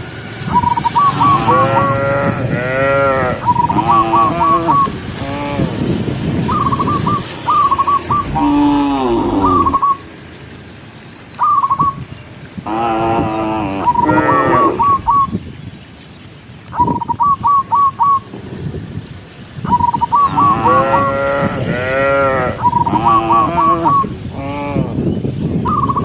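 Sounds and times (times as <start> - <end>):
cows mooing: 1.0 - 6.1, 7.6 - 10.0, 12.6 - 15.0, 20.2 - 25.1.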